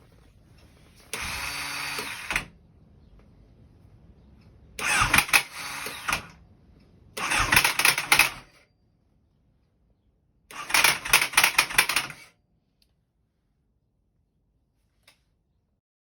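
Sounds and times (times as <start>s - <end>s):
motorcycle starter cranking: 4.8s - 6.4s, 7.2s - 8.6s, 10.5s - 12.2s.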